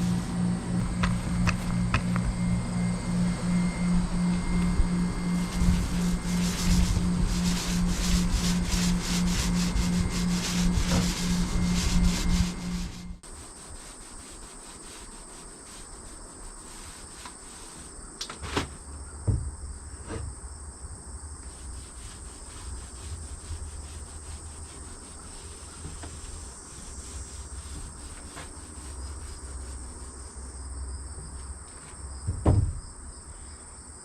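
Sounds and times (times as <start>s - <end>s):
crickets chirring: 0.0s - 34.0s
soft knocks: 32.2s - 32.9s.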